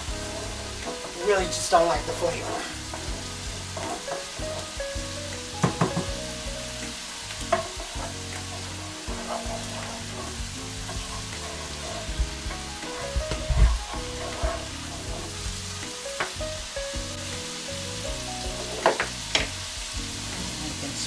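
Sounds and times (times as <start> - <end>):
garlic and onions sizzling: 0.0 - 21.0
spoon scraping a pot: 7.5 - 13.2.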